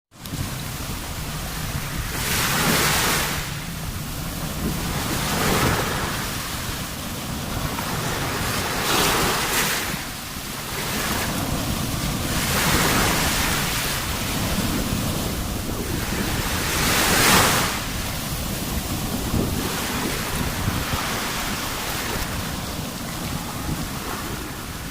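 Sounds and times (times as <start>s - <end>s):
sea waves breaking: 0.1s - 24.9s
wind rumble on microphone: 0.2s - 24.9s.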